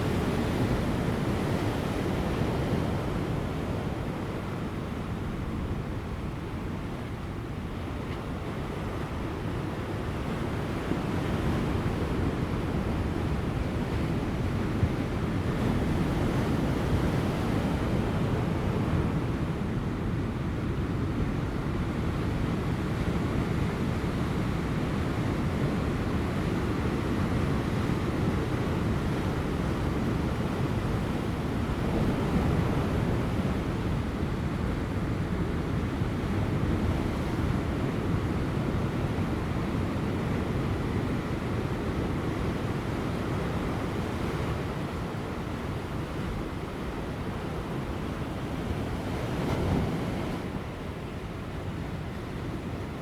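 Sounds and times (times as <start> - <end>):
light wind: 0.0 - 53.0.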